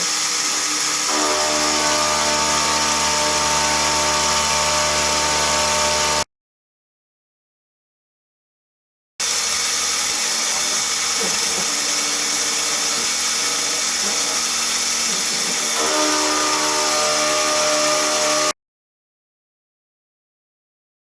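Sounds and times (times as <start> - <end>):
milling machine cutting metal: 0.0 - 6.3, 9.2 - 18.6.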